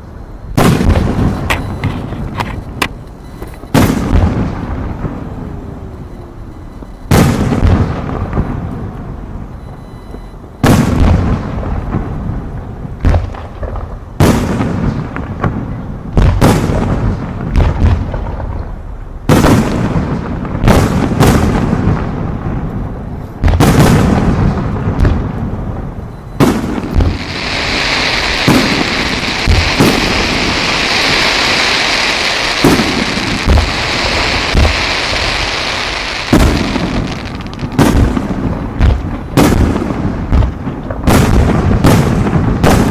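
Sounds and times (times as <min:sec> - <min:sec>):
fireworks booming: 0:00.0 - 0:42.9
high crackling hiss: 0:24.5 - 0:41.1.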